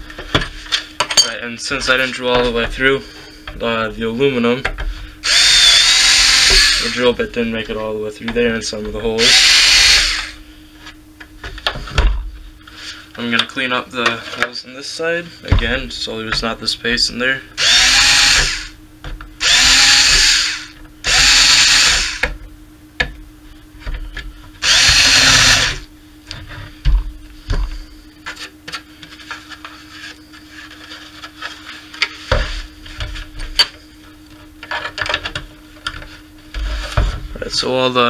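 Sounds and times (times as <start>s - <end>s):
power drill drilling metal: 5.2s - 7.0s, 9.2s - 10.4s, 17.6s - 18.7s, 19.4s - 22.2s, 24.6s - 25.8s.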